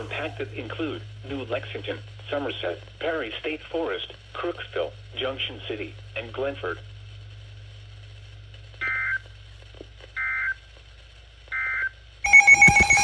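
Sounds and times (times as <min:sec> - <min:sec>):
loud alert tone: 0:12.3 - 0:13.0
warbling data bursts: 0:12.3 - 0:13.0.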